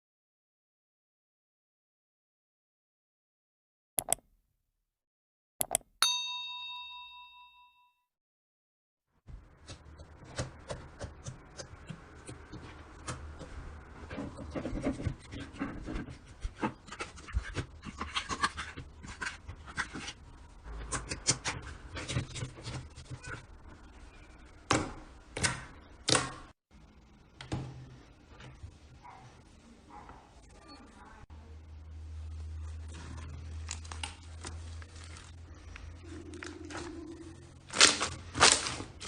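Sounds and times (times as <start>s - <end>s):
slime squelching clicks: 4.0s - 4.2s.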